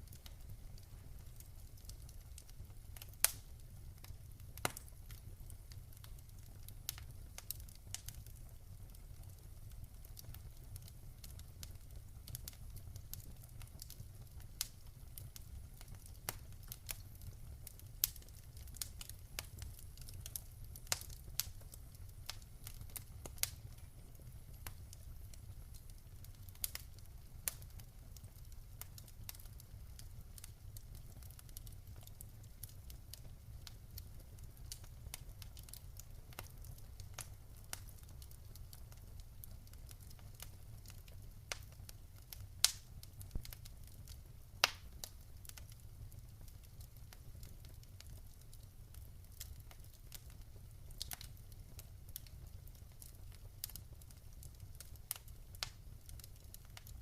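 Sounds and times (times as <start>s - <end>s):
low rumble of flames: 0.0s - 57.0s
wood fire crackling and popping: 0.0s - 57.0s.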